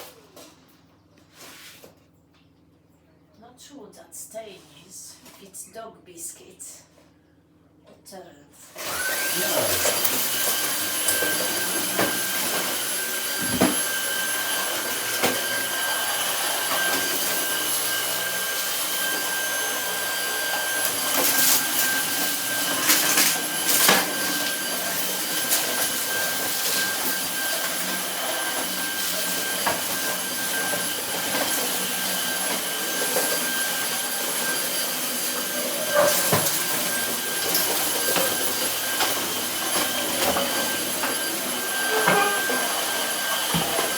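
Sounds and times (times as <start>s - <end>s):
stick vacuum motor whine: 8.7s - 43.9s.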